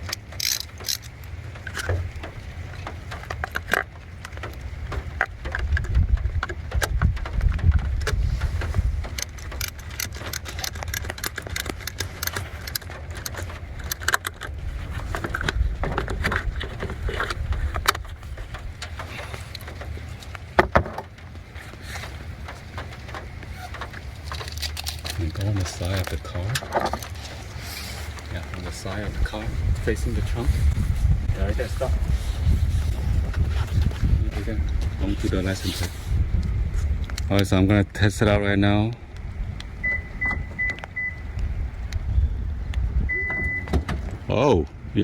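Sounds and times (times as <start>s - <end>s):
metallic clicks of wrench and clamp: 0.0s - 1.1s, 9.1s - 14.5s
steady low rumble: 0.0s - 45.0s.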